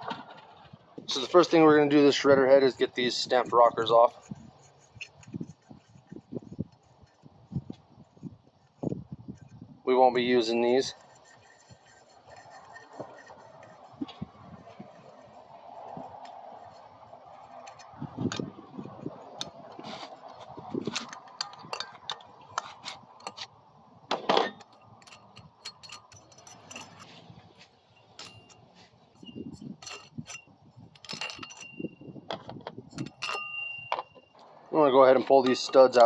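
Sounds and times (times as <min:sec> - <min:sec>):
metallic clinks of tools and parts: 0:20.8 - 0:23.5, 0:24.3 - 0:27.2, 0:27.9 - 0:32.2, 0:32.9 - 0:34.4.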